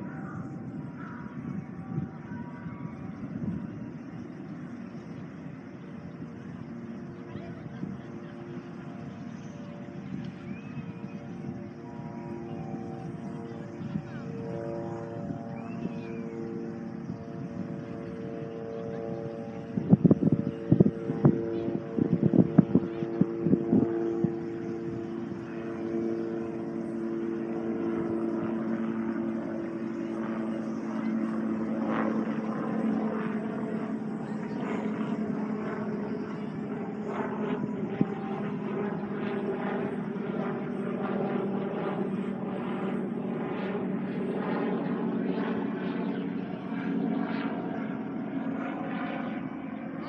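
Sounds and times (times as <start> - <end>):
held tones sinking in pitch: 0.0 - 32.2.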